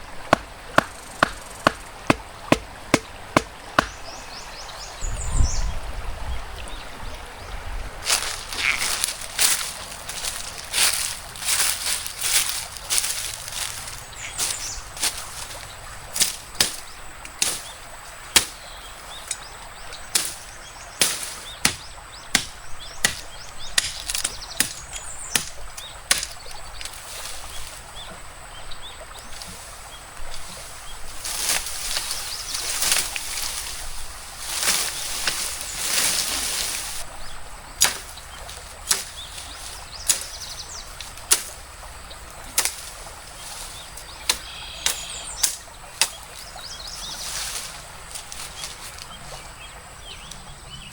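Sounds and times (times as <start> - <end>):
stream hiss: 0.0 - 50.9
rustling: 8.0 - 18.6, 29.3 - 37.1.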